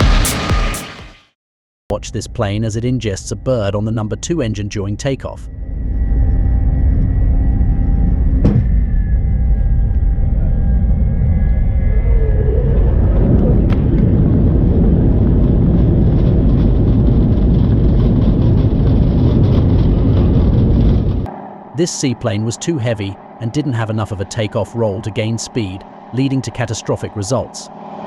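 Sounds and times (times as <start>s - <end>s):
jet engines roaring: 9.5s - 28.0s.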